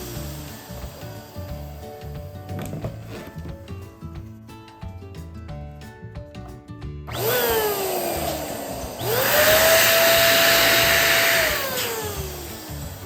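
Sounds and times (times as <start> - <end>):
electric balloon pump whining: 0.0 - 3.5, 7.1 - 13.0.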